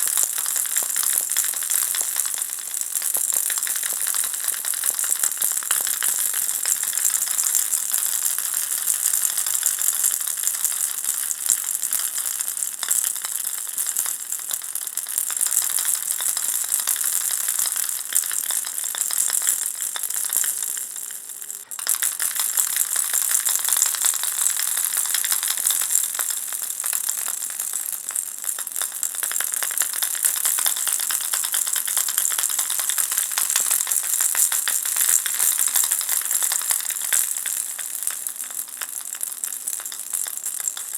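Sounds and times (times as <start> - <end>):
baby rattle shaking: 15.3 - 40.9.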